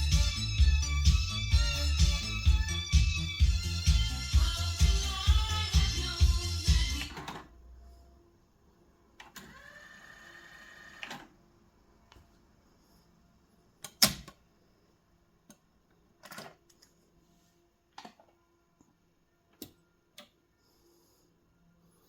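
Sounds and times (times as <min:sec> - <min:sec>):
music playback: 0:00.0 - 0:07.6
cassette motor whirring: 0:09.2 - 0:11.4.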